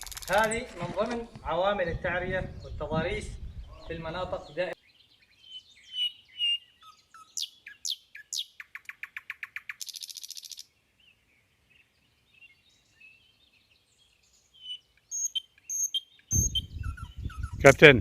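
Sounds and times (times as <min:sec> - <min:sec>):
songbird singing: 0:00.0 - 0:17.7.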